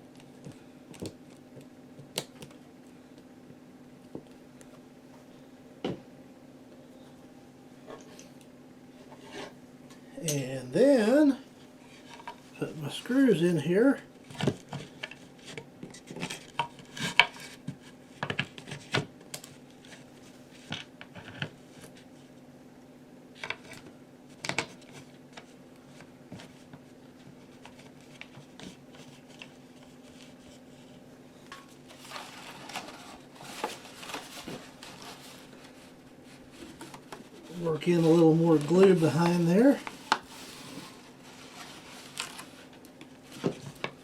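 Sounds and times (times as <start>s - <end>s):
faint hum: 0.0s - 44.0s
rubbing and scraping: 31.9s - 43.7s.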